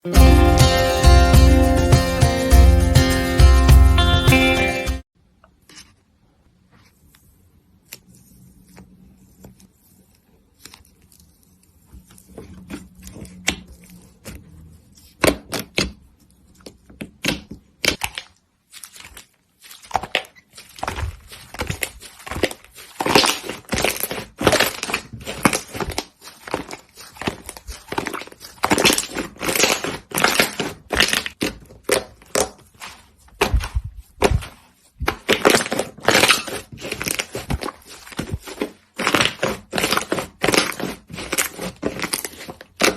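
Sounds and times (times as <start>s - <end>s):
slime crackling and popping: 17.1s - 42.9s.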